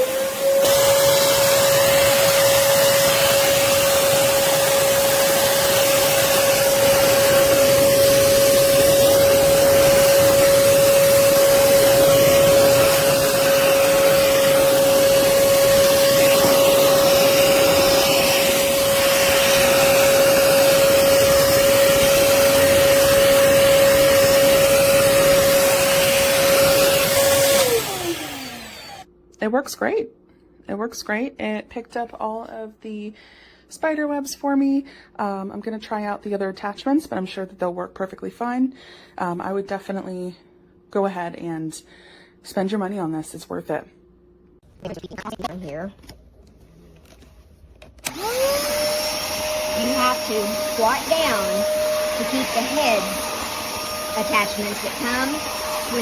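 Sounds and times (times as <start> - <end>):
vacuum cleaner motor whine: 0.0 - 29.1, 47.9 - 56.0
rushing air: 2.9 - 25.8.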